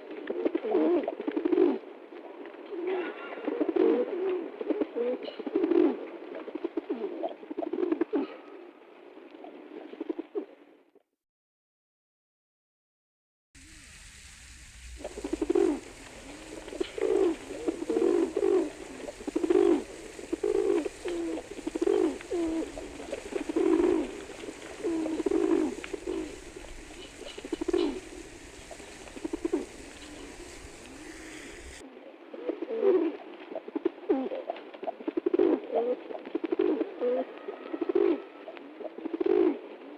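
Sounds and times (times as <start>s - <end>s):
pigeon cooing: 0.0s - 10.8s, 14.6s - 39.9s
steady hiss: 13.6s - 31.8s.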